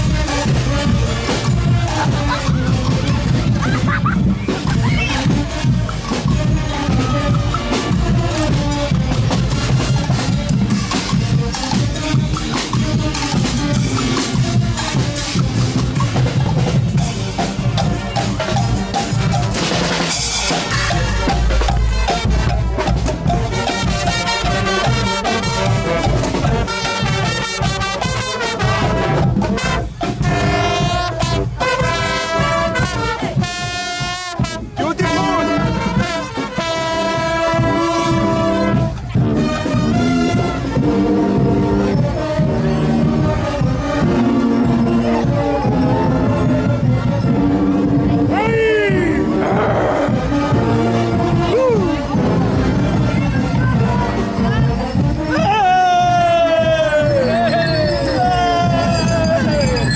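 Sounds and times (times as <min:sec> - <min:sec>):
bass drum and snare beat: 0:00.0 - 0:41.8
brass band horns: 0:00.0 - 0:55.6.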